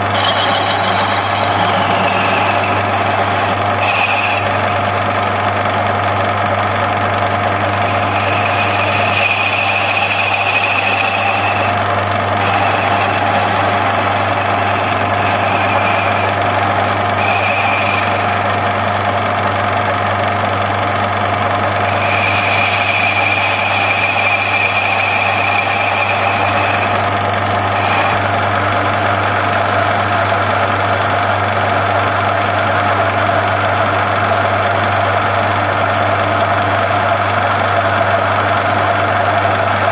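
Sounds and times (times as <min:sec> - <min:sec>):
high-pitched cutting whine: 0:00.0 - 0:05.5, 0:07.6 - 0:19.6, 0:21.5 - 0:28.4
lathe motor hum: 0:00.0 - 0:39.9.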